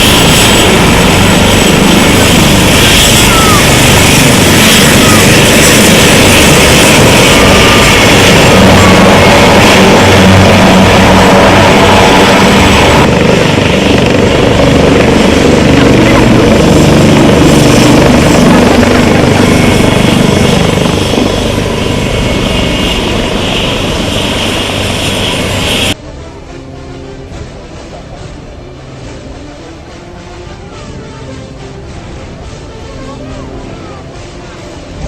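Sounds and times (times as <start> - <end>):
aircraft noise with low drone: 0.0 - 35.0
music: 13.1 - 19.6, 26.0 - 35.0.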